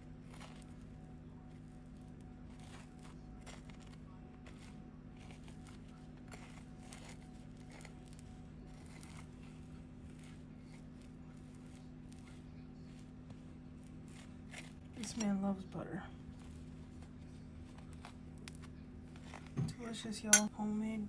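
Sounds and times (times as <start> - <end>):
knife scraping butter on bread: 0.0 - 15.4
steady low hum: 0.0 - 21.0.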